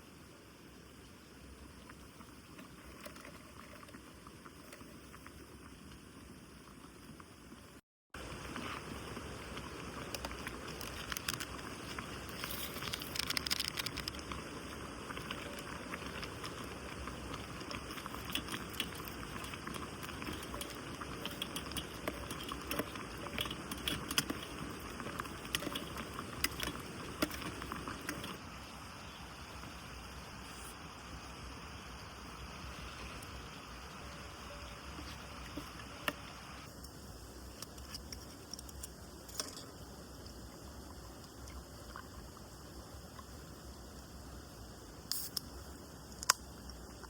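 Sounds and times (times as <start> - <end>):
mountain stream running: 0.0 - 47.0
gear clicking and rattling: 8.2 - 28.4.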